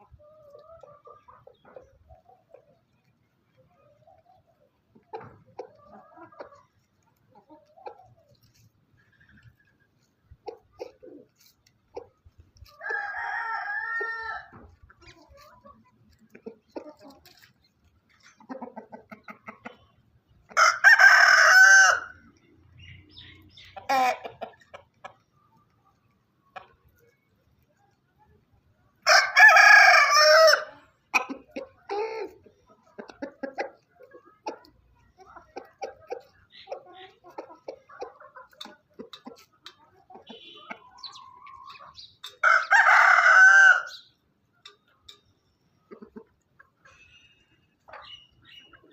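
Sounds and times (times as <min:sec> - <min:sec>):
rooster clucking: 0:04.6 - 0:22.2, 0:23.2 - 0:25.3, 0:29.1 - 0:44.1
rooster crowing: 0:42.4 - 0:43.9.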